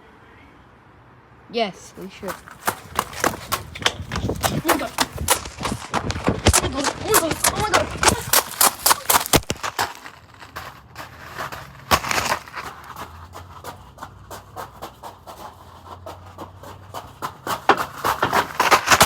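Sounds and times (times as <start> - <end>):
rustling and handling noise: 1.8 - 13.9.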